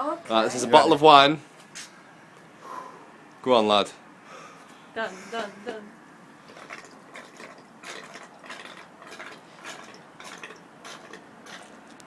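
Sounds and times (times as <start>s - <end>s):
gulping through a straw: 6.5s - 11.8s.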